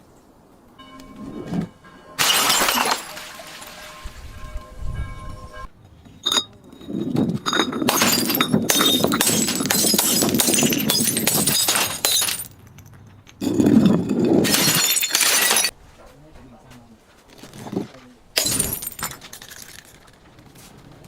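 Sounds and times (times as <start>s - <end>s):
glass bottles breaking and crunching: 2.2s - 4.4s, 6.2s - 15.7s, 18.4s - 20.2s.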